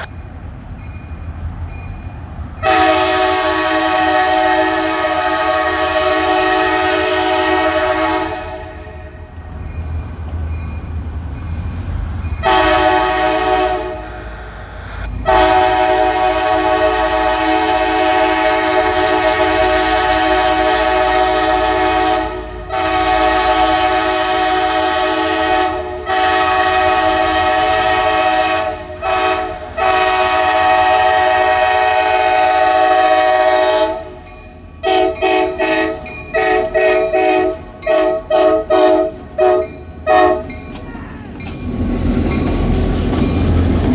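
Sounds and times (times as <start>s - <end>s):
passing train rumble: 0.0s - 43.9s
locomotive air horn blasts: 2.6s - 9.2s, 12.4s - 14.4s, 15.2s - 34.2s, 34.8s - 40.6s.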